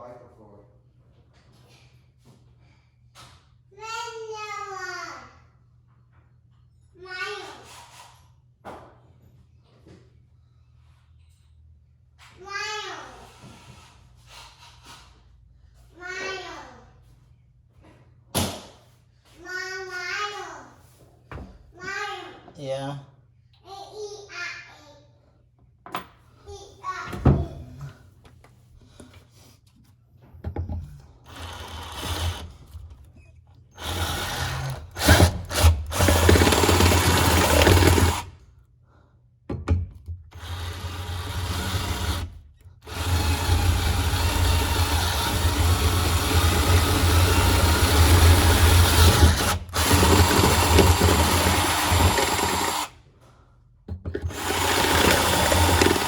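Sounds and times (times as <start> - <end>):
power drill boring: 31.2 - 32.8, 33.7 - 38.3, 40.3 - 53.0, 54.2 - 56.0.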